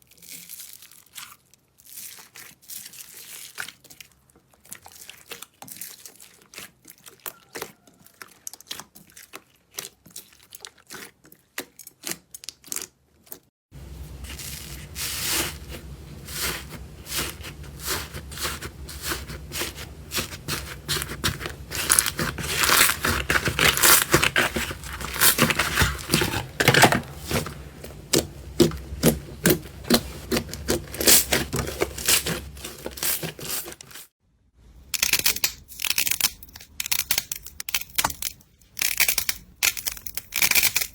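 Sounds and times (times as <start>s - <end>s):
low steady hum: 13.8s - 34.0s
slime crackling and popping: 19.0s - 27.4s.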